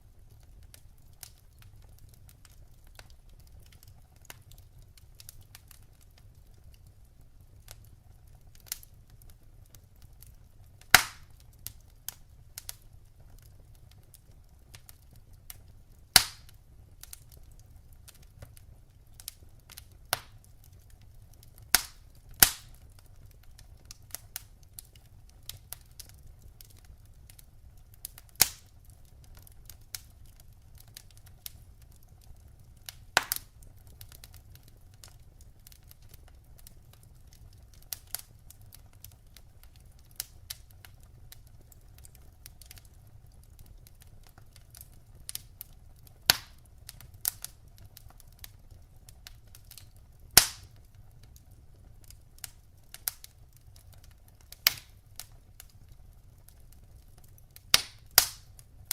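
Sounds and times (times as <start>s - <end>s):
fire crackling: 0.0s - 58.9s
fire rumbling: 0.0s - 58.9s
loud sharp pops: 11.0s - 11.3s, 16.2s - 16.5s, 21.8s - 22.7s, 33.2s - 33.5s, 46.3s - 46.6s, 50.4s - 50.7s.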